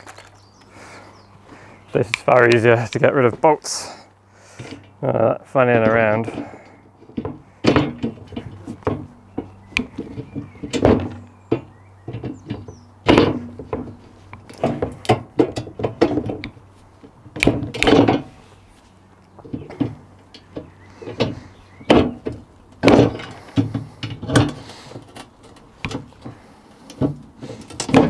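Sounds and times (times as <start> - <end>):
wooden boards knocking and thudding: 5.8 - 18.4, 19.4 - 28.0.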